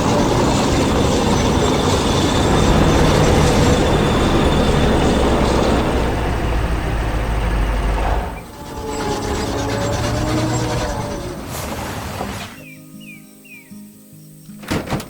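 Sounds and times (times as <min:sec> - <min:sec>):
heavy machinery rumbling and rattling: 0:00.0 - 0:12.6.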